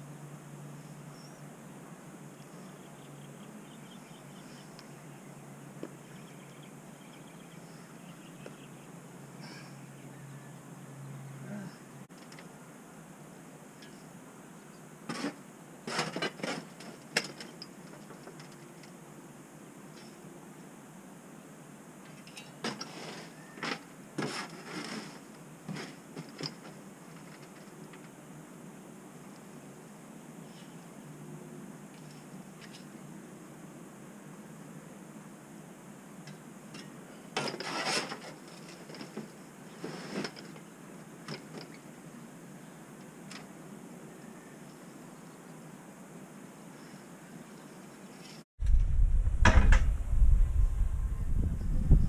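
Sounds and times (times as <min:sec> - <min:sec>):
low steady hum: 0:48.6 - 0:52.0.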